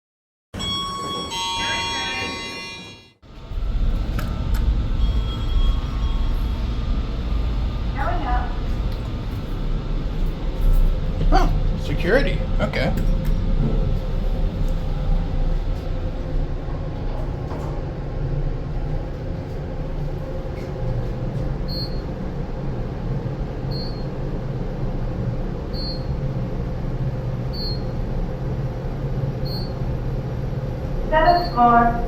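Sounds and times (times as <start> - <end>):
short high beep: 0.6 - 3.0
elevator hum and rumble: 0.6 - 32.0.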